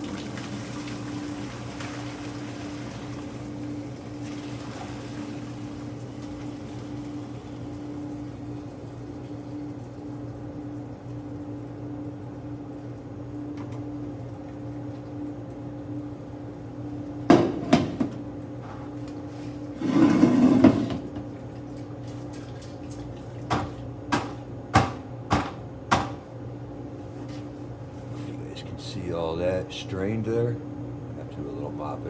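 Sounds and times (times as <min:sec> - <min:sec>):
liquid pouring: 0:00.0 - 0:03.5
steady low hum: 0:02.5 - 0:32.0
sharp knocks: 0:23.5 - 0:26.2.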